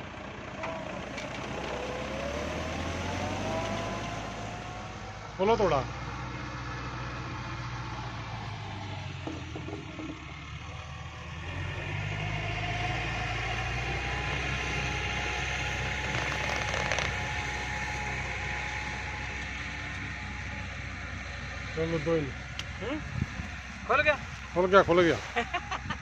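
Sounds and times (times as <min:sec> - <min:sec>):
tractor engine running: 0:00.0 - 0:26.0
faint mechanical whine: 0:12.4 - 0:25.1.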